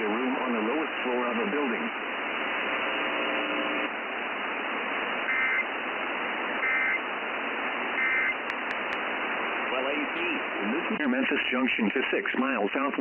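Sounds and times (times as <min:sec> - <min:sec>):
radio static hiss: 0:00.0 - 0:13.0
buzzy digital data bursts: 0:05.3 - 0:05.6, 0:06.6 - 0:07.0.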